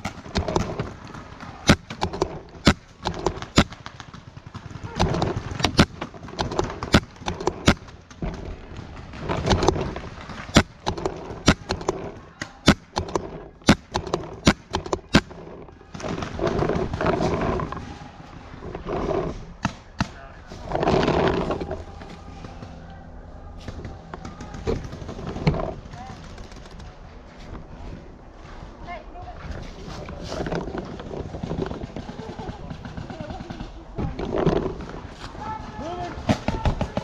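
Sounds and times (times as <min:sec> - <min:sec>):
paintball markers firing: 0:00.0 - 0:18.1.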